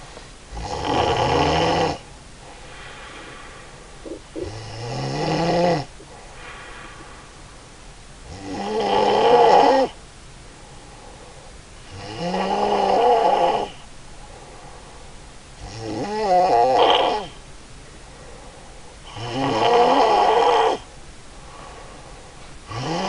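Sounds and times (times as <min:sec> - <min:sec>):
woman snoring: 0:00.5 - 0:02.0, 0:04.0 - 0:05.9, 0:08.3 - 0:10.0, 0:11.9 - 0:13.8, 0:15.6 - 0:17.4, 0:19.1 - 0:20.9, 0:22.7 - 0:23.0.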